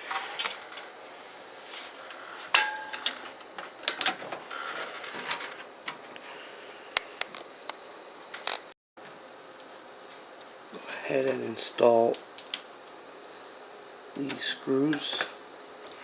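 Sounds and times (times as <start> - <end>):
fan and screws clinking on metal case: 2.5 - 4.3.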